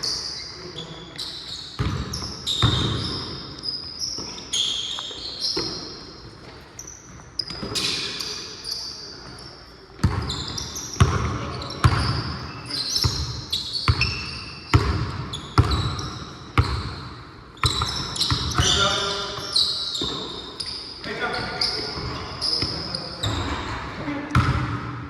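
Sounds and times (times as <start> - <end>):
sneakers squeaking on court: 0.0 - 25.0
basketball dribbling: 10.0 - 12.4, 13.0 - 18.8.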